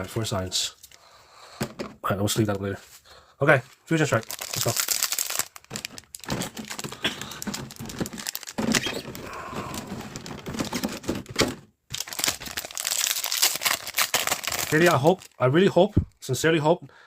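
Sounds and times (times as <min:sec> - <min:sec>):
foil pack crinkling: 0:04.1 - 0:15.4.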